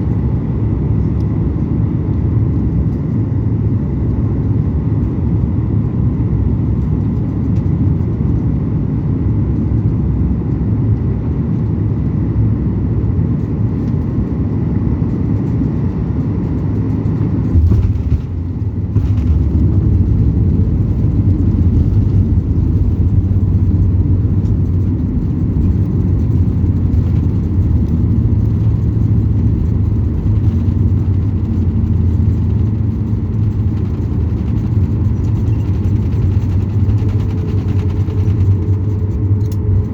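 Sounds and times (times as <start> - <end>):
airplane cabin rumble: 0.0 - 39.9
landing gear touchdown jolt: 17.4 - 39.2.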